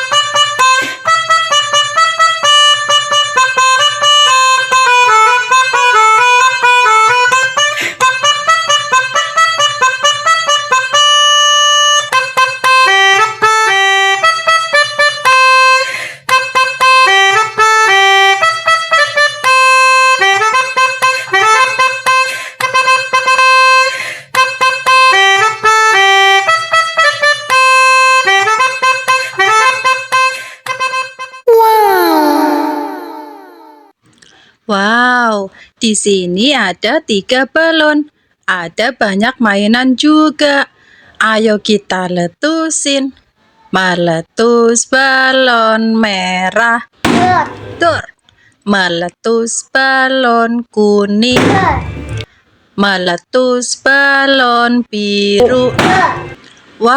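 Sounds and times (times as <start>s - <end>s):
bouncy children's tune: 0.0s - 33.9s, 47.1s - 48.0s, 51.2s - 52.2s, 55.3s - 56.4s.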